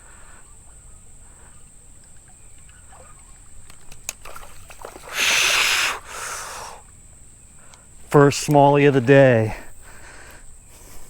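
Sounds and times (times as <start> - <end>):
water trickling: 2.0 - 5.8
fish splashing in water: 2.6 - 6.1
small clicks: 3.6 - 4.4.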